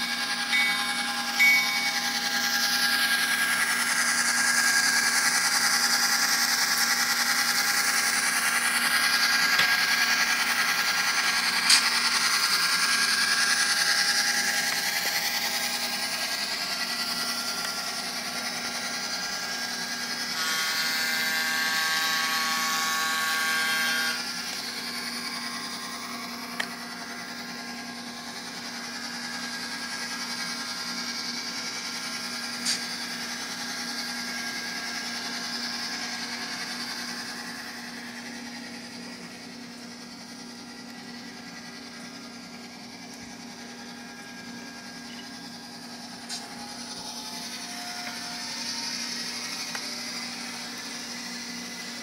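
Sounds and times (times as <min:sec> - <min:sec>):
diesel locomotive engine sound: 0:00.0 - 0:52.0
model motor and gears whining: 0:00.0 - 0:52.0
held chord of several tones: 0:00.5 - 0:02.2.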